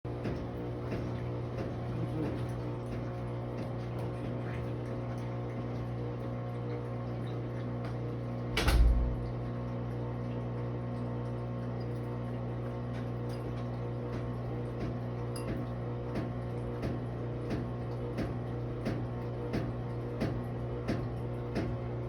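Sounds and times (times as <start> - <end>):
washing machine humming: 0.0 - 22.0
washing machine heavy bang: 8.5 - 9.5.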